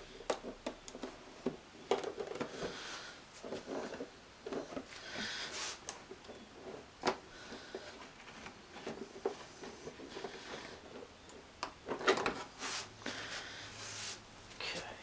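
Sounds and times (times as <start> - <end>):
packaging rustling and scraping: 0.2 - 14.2.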